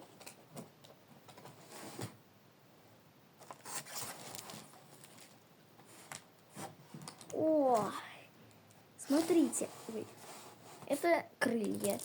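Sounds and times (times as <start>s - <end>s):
rustling packaging: 3.4s - 7.9s, 9.0s - 12.0s.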